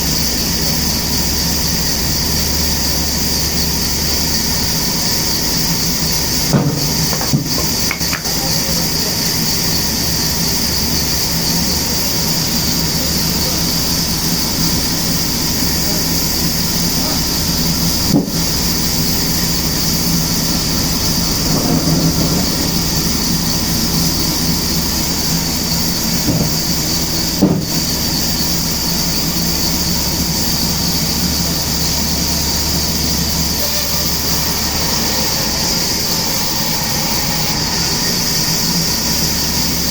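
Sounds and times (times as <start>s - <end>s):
sawmill machinery hiss and hum: 0.0s - 39.9s
sharp knocks: 6.5s - 8.4s, 27.4s - 27.9s.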